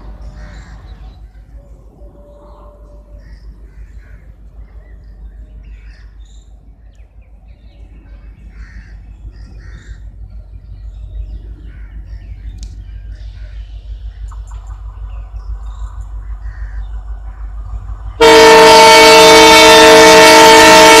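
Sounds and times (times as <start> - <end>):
steady low rumble: 0.0 - 20.1.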